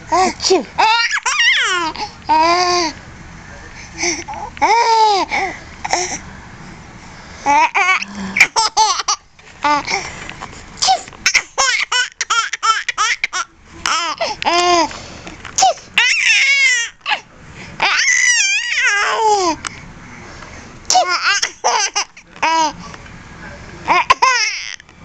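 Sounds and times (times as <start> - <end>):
baby laughing: 0.1 - 2.9, 4.3 - 6.0, 7.5 - 10.0, 10.8 - 14.9, 20.9 - 22.7, 23.9 - 24.8.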